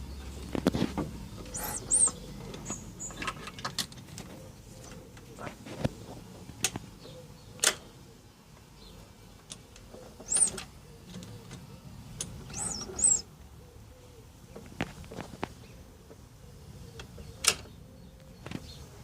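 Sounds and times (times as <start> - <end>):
bird chirping: 1.3 - 3.5, 10.0 - 14.7.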